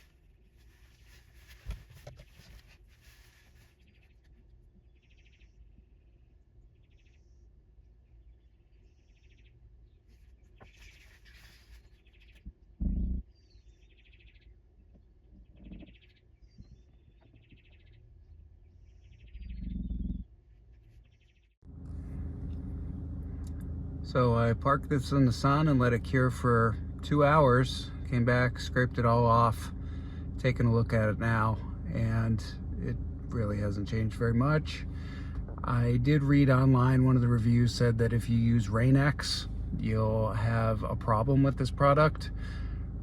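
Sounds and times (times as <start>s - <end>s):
bird chirping: 15.3s - 20.2s
low rumbling bursts: 21.6s - 43.0s
steady hum: 21.6s - 43.0s.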